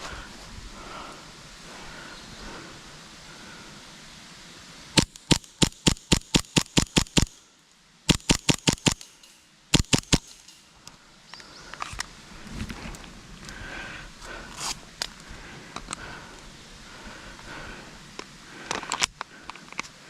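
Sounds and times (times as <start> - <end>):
airsoft gun firing sharp cracks: 5.0 - 7.5, 8.1 - 10.8.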